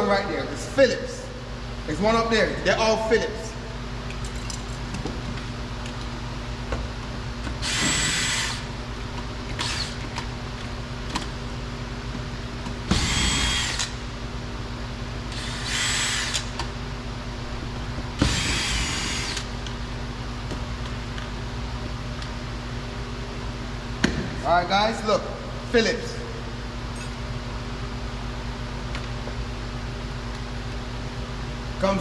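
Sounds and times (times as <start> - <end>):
cordless drill running: 7.6 - 8.7, 9.6 - 10.0, 12.9 - 14.0, 15.3 - 16.5, 18.2 - 19.5.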